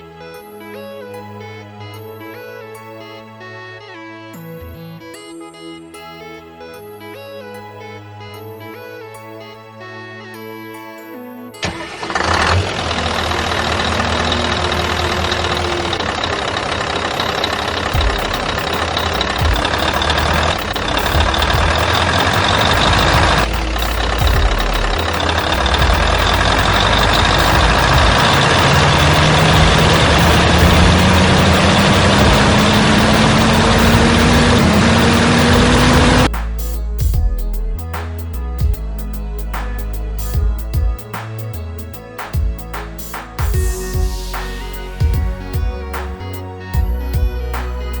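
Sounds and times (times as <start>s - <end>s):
loud engine-like noise: 11.6s - 36.8s.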